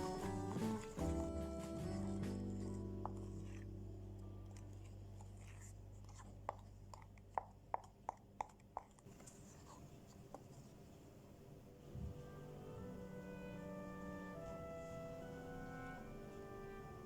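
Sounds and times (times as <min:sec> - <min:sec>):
low hum: 0:00.0 - 0:08.4.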